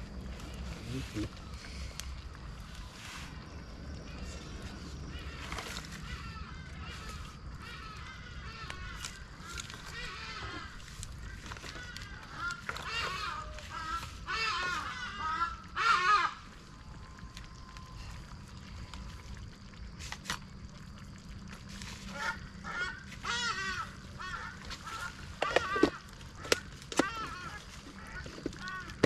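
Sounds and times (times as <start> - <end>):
birds honking: 5.1 - 16.5, 22.1 - 29.0.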